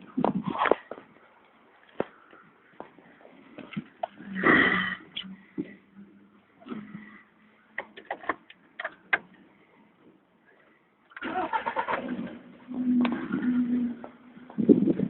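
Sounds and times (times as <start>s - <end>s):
car engine starting and knocking: 11.1s - 14.6s.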